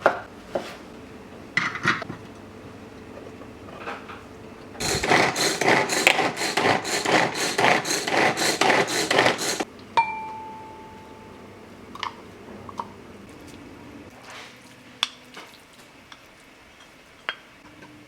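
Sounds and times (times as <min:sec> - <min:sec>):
utensil scraping and rattling in bowl: 0:04.8 - 0:09.6.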